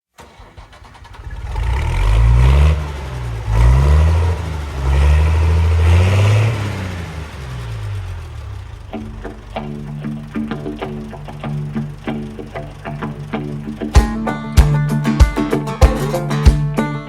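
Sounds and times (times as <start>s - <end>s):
heavy vehicle engine accelerating: 0.2s - 16.5s.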